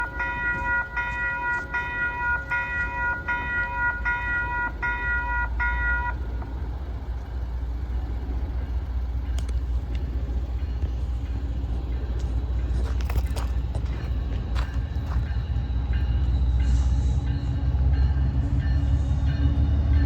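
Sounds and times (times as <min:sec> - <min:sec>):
locomotive air horn blasts: 0:00.0 - 0:06.2
freight train rumbling: 0:00.0 - 0:20.0.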